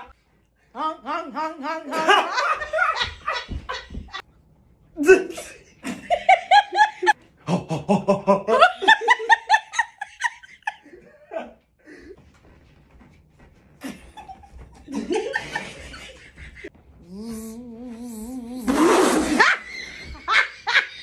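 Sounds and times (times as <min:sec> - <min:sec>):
people laughing: 0:01.1 - 0:04.2, 0:05.8 - 0:11.6, 0:13.8 - 0:16.7, 0:19.3 - 0:21.0.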